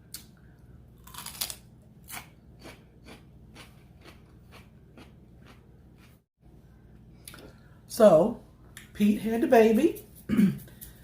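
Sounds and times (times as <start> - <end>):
chewing crunchy raw vegetables: 1.0 - 6.2.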